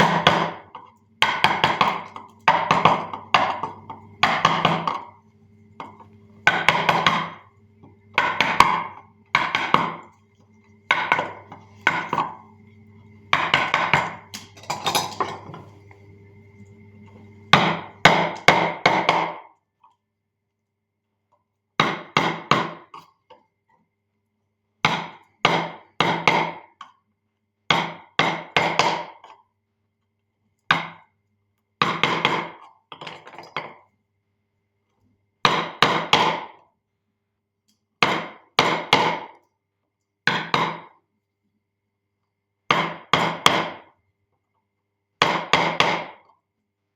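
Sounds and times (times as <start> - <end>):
mallet tapping chisel into wood: 1.2 - 3.5, 6.5 - 7.4, 8.2 - 10.0.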